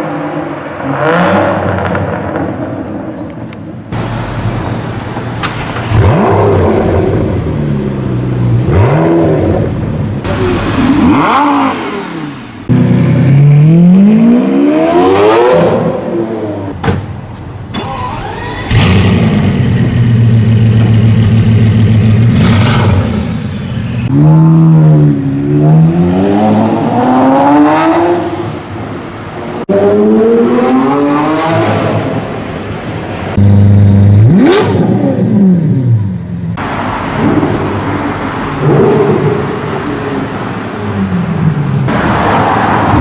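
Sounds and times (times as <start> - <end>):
sports car engine revving: 5.4 - 16.7, 33.4 - 36.1.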